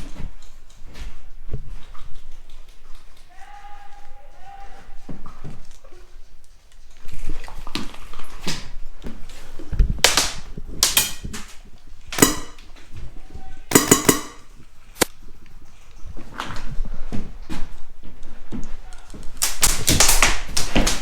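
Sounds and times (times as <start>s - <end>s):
airsoft rifle shots: 12.2s - 12.6s, 13.7s - 14.4s.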